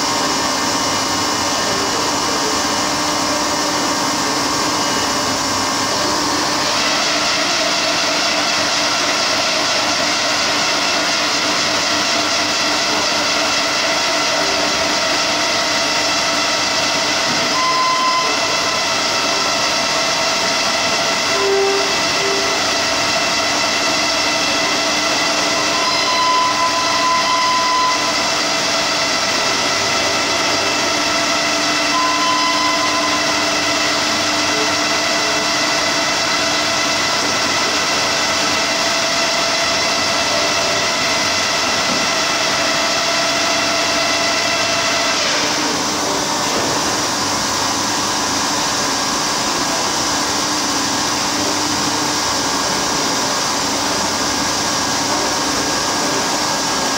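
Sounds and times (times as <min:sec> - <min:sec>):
machine whine and hum: 0:00.0 - 0:56.9
brief higher tones: 0:17.4 - 0:18.6, 0:21.2 - 0:22.7.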